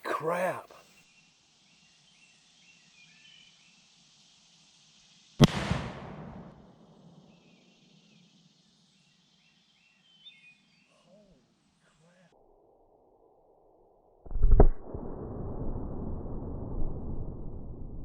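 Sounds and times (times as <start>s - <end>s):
firecracker bang: 5.4s - 6.8s.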